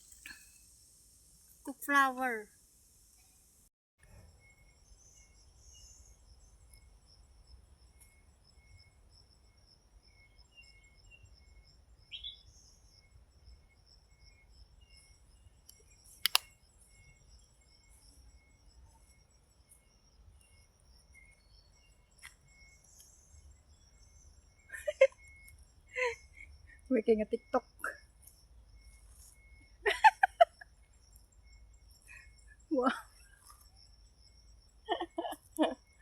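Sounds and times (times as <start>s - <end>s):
insects buzzing: 0.0s - 3.7s, 4.4s - 36.0s
sharp click: 15.7s - 16.5s.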